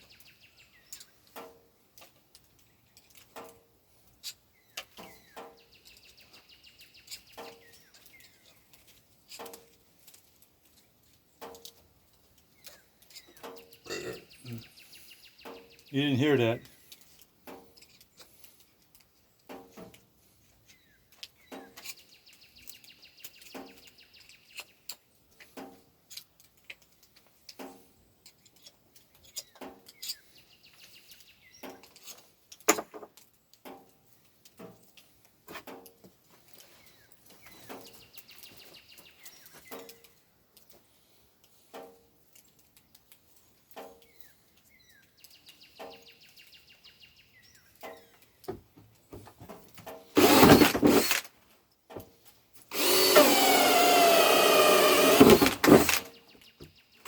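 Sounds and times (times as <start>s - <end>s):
birds chirping faintly: 0.0s - 32.6s, 33.3s - 57.0s.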